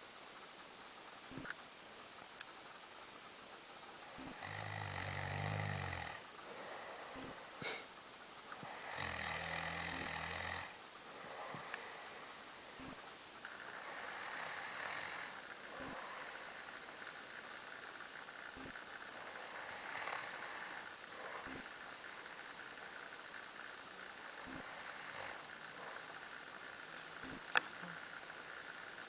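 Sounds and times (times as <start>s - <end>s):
man snoring: 4.1s - 7.9s, 8.6s - 13.0s, 13.7s - 17.8s, 18.5s - 23.0s, 24.4s - 26.4s, 27.2s - 28.2s.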